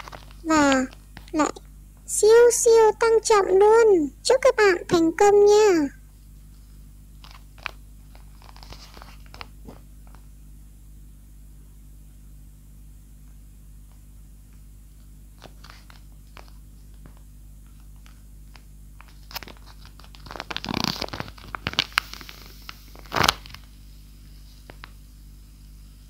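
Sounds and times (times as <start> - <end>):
paper squishy crinkling and crunching: 0.0 - 1.5, 7.2 - 10.2, 15.3 - 23.7.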